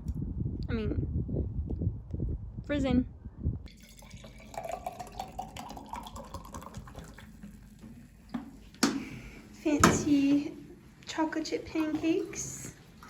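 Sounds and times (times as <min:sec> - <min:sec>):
liquid pouring into container: 0:03.7 - 0:07.8.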